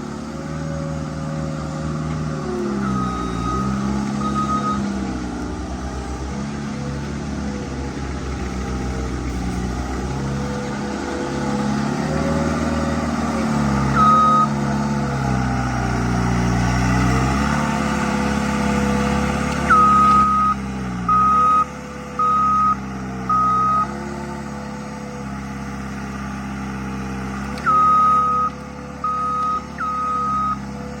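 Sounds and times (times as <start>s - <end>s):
skid steer engine running: 0.0s - 31.0s
reversing alarm beeps: 2.6s - 5.0s, 13.8s - 14.6s, 19.6s - 23.9s, 27.6s - 30.7s.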